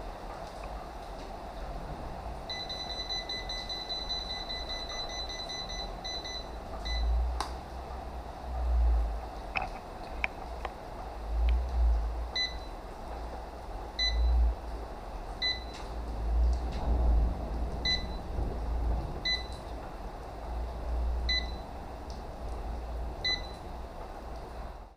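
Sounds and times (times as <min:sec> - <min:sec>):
low rumble: 0:10.2 - 0:24.8.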